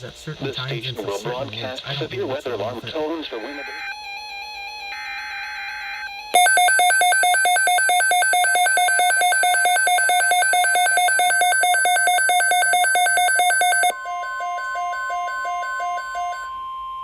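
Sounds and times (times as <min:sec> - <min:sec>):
two-pitch pulsing alarm beeping: 0:03.6 - 0:17.0
digital header tones: 0:06.4 - 0:16.4.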